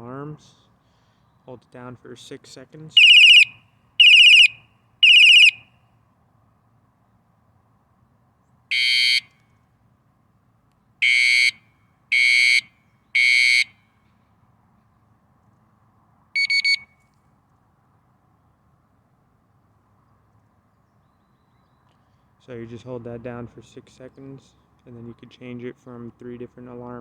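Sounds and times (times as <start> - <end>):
electronic alarm tones: 3.0 - 5.6, 16.4 - 16.8.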